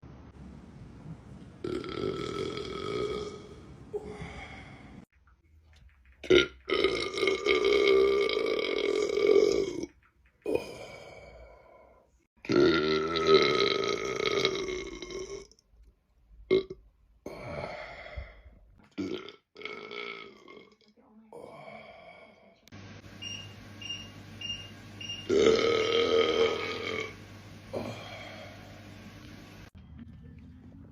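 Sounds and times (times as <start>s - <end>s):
man burping: 1.6s - 4.4s, 6.2s - 11.4s, 12.4s - 15.6s, 16.5s - 18.0s, 18.8s - 20.8s, 25.3s - 28.6s.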